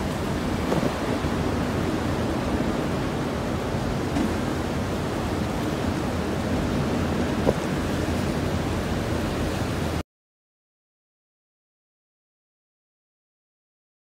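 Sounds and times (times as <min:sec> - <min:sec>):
strong wind gusts: 0:00.0 - 0:10.0.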